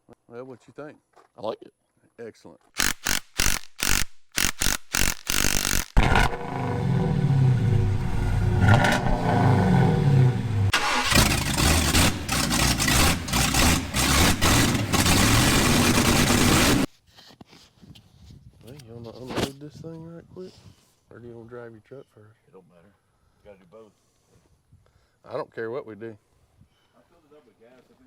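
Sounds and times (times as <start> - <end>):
vehicle engine accelerating through gears: 6.0 - 16.9
wind and road noise: 6.0 - 16.9.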